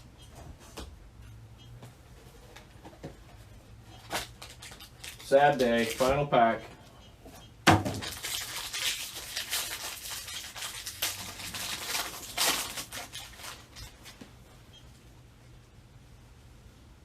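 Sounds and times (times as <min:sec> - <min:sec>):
wrapper tearing: 0:04.0 - 0:06.3, 0:07.9 - 0:14.2
wrapper crackling and rustling: 0:04.0 - 0:06.4, 0:07.9 - 0:14.2.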